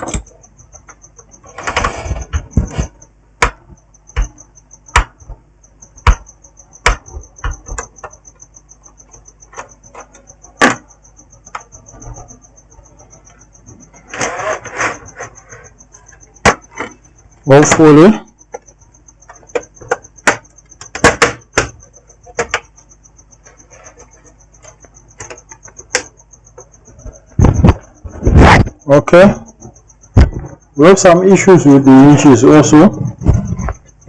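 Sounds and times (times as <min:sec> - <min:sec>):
plastic scraping: 0:14.0 - 0:15.8.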